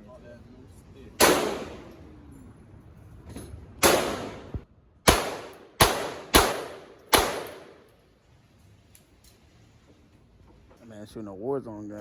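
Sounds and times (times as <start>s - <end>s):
gunshots with echo: 1.2s - 1.9s, 3.8s - 7.8s.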